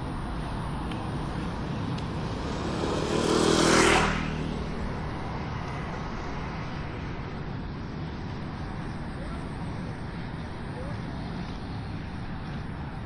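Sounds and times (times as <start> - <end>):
street traffic noise: 0.0 - 13.0
vehicle passing by: 0.2 - 8.8.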